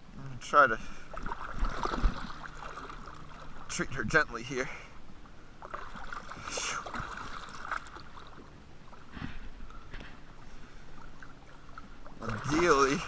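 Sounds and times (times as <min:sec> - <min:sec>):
water lapping around kayak: 0:00.0 - 0:13.0
short splashes or knocks: 0:01.1 - 0:03.7, 0:05.6 - 0:10.2.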